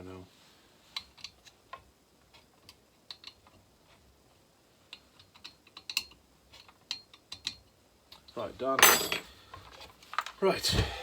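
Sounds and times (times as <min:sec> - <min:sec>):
tools and parts clicking: 0:01.0 - 0:03.6, 0:04.9 - 0:10.4.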